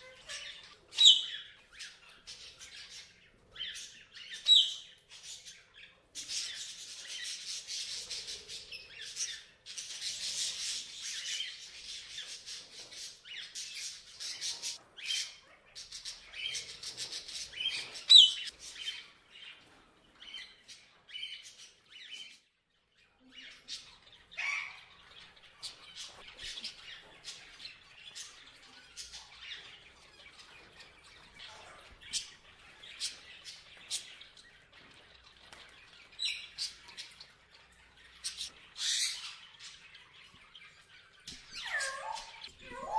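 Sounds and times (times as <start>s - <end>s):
parrots chirping and squawking: 0.0s - 5.6s, 6.2s - 19.3s, 23.4s - 42.9s
loud parrot squawk: 41.6s - 42.9s.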